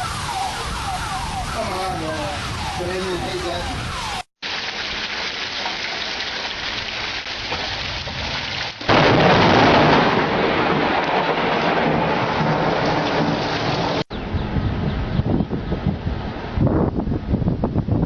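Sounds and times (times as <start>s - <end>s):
rain falling: 0.0s - 14.1s
loud thunderclap: 7.8s - 16.1s.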